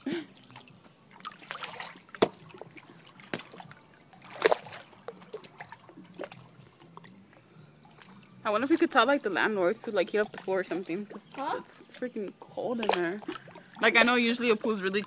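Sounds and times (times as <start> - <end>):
hot tub water splashing: 0.0 - 15.0.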